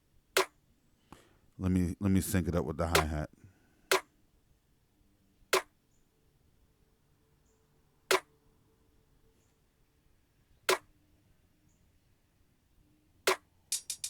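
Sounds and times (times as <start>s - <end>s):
hi-hat hits: 13.7s - 14.0s.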